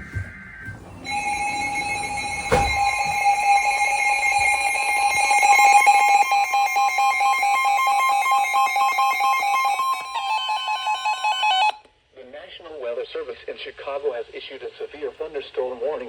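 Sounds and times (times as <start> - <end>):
steady electronic alarm tone: 0.0 - 11.8
higher alarm tone: 0.1 - 11.8.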